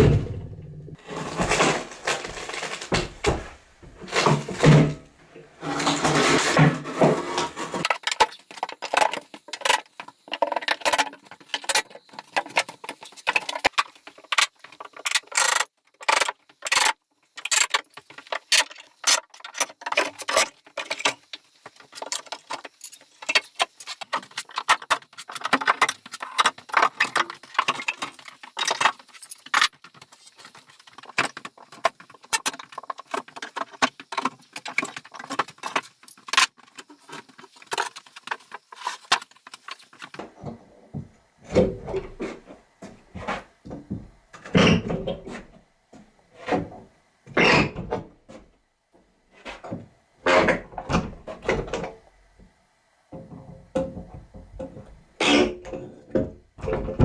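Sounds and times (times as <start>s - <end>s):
floorboards knocking and clattering: 0.0s - 15.0s, 39.9s - 48.6s, 53.2s - 57.0s.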